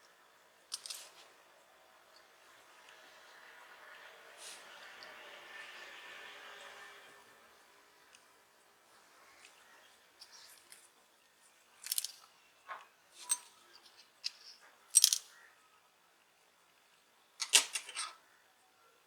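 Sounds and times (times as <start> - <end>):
small hard clicks and clinks: 0.7 - 1.1, 11.8 - 12.3, 13.2 - 15.3.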